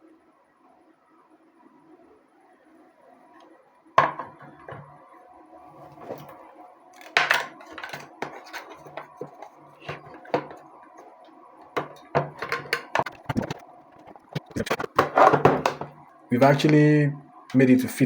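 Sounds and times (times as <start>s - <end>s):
battery pack knocks and clatter: 7.1s - 10.6s, 11.8s - 13.6s, 14.8s - 16.0s.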